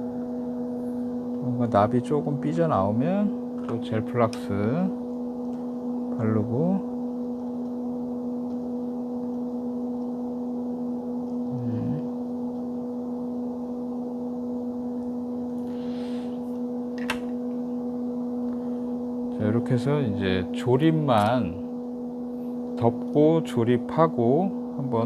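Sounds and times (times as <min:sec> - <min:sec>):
electrical hum: 0:00.0 - 0:25.0
short low vocal sound: 0:11.5 - 0:12.2.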